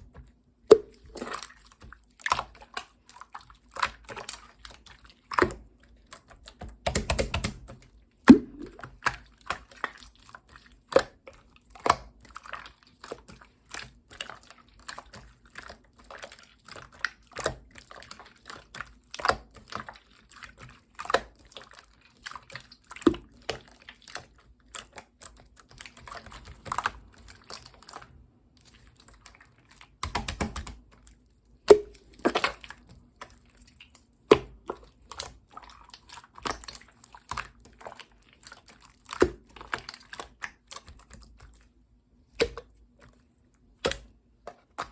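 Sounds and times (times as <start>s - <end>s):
slime squelching: 0.0s - 44.9s
slime squishing by hand: 0.0s - 44.9s.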